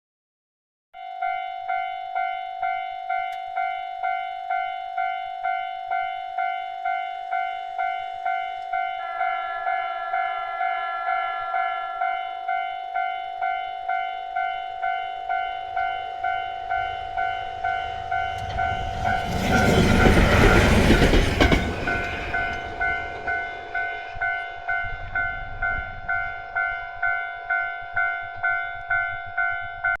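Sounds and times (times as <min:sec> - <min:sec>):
locomotive passing with rumble: 0:15.8 - 0:25.7.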